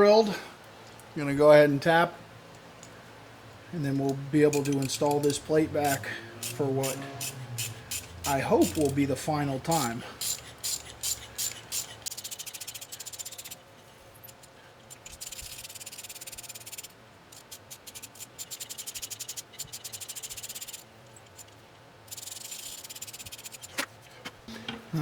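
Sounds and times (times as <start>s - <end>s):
rapid ratcheting clicks: 4.5s - 9.0s, 9.7s - 13.6s, 14.2s - 23.8s.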